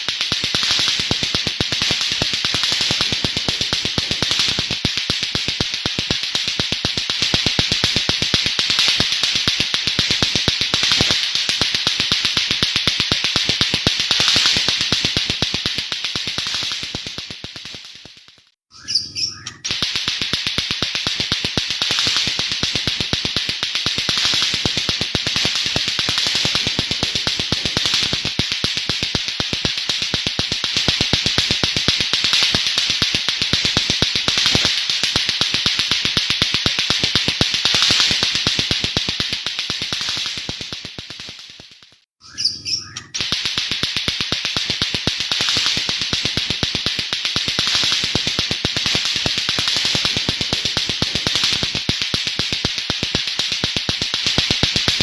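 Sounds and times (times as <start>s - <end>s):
bird singing rapid clicking song: 18.7s - 19.8s, 42.2s - 43.2s.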